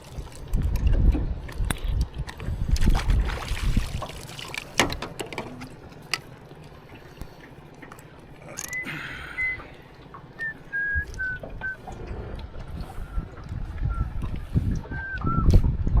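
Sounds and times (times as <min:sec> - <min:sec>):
low wind rumble: 0:00.0 - 0:06.0, 0:08.9 - 0:16.0
water splashing and trickling: 0:00.0 - 0:16.0.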